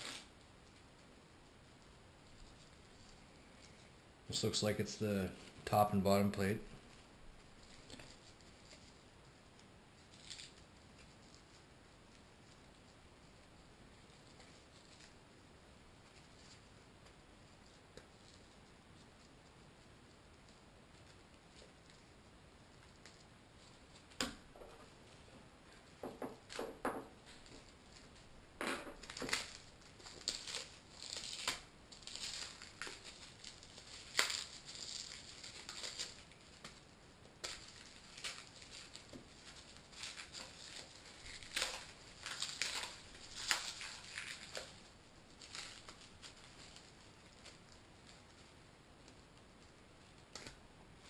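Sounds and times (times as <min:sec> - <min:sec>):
plastic packaging crinkling: 0:01.8 - 0:11.7, 0:25.8 - 0:50.6.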